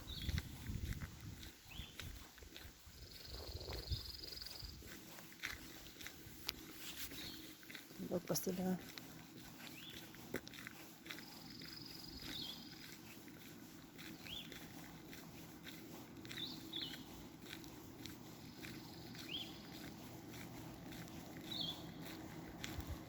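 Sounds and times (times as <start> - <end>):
small birds chirping: 0.0 - 23.0
soft footsteps: 0.0 - 23.0
steady low hum: 14.6 - 23.0.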